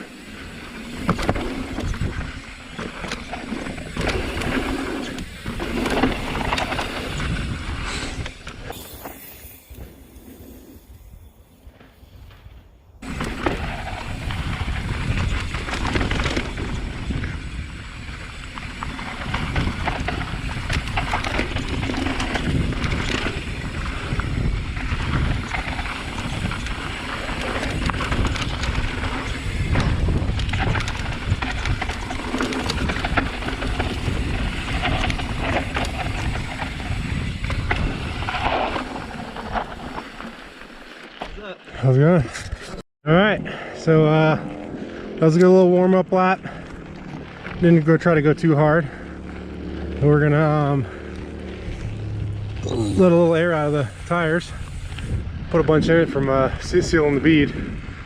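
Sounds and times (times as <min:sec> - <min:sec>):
bike rattling over bumps: 0:00.0 - 0:42.8, 0:43.5 - 0:58.0
bike tyres on dirt: 0:00.0 - 0:58.0
wind on microphone: 0:13.0 - 0:39.9, 0:51.6 - 0:58.0.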